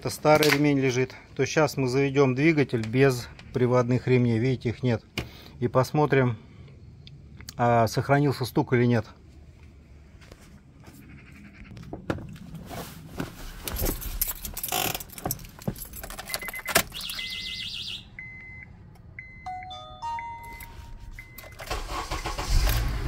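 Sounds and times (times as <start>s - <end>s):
keys jangling: 13.8s - 17.1s
dashboard warning beeps: 16.3s - 22.3s.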